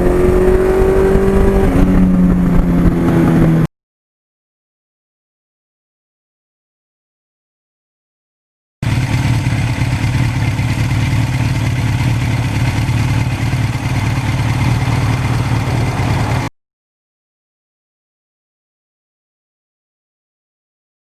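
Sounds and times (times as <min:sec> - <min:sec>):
motorcycle engine humming: 0:00.0 - 0:03.7, 0:08.8 - 0:16.5.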